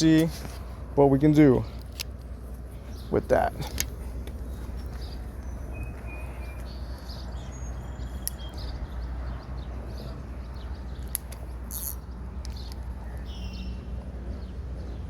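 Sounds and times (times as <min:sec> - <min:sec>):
faint bird chirps: 0:04.6 - 0:11.0, 0:11.7 - 0:14.5.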